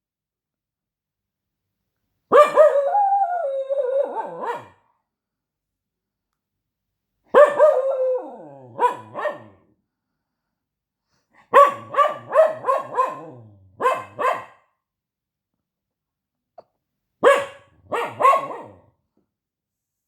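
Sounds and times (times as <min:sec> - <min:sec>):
dog barking: 0:02.3 - 0:02.9, 0:04.1 - 0:04.8, 0:07.3 - 0:09.6, 0:11.5 - 0:14.7, 0:17.2 - 0:18.9.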